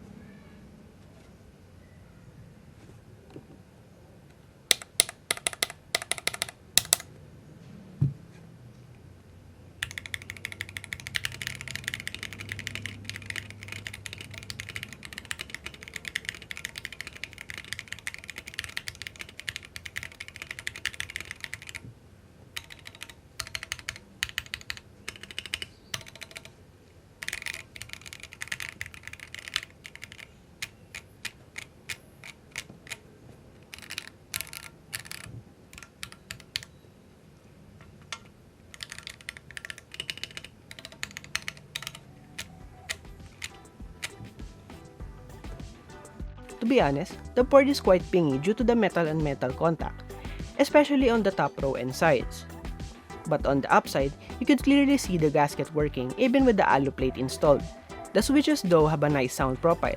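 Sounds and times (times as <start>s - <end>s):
mechanical keyboard typing: 4.7s - 7.1s, 9.8s - 21.8s, 22.6s - 26.6s, 27.2s - 33.0s, 33.6s - 36.8s, 38.2s - 44.4s, 46.6s - 52.3s, 53.3s - 59.9s.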